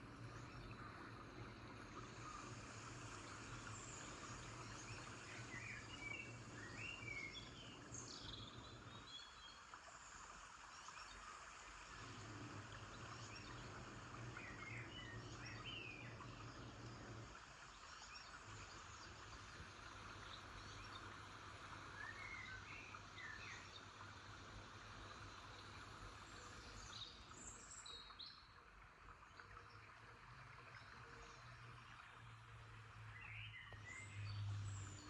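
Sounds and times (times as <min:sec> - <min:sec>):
steady low hum: 0:00.0 - 0:09.2, 0:09.8 - 0:27.8.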